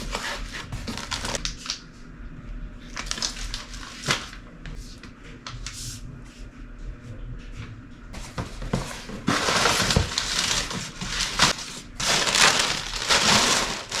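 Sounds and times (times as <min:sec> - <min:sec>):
packaging rustling: 0:08.7 - 0:14.0.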